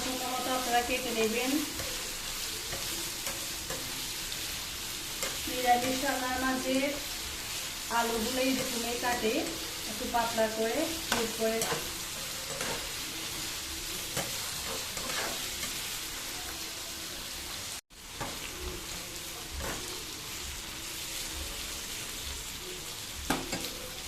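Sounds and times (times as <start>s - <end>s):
spatula scraping pan: 0.0s - 16.2s
potatoes sizzling in oil: 0.0s - 24.0s.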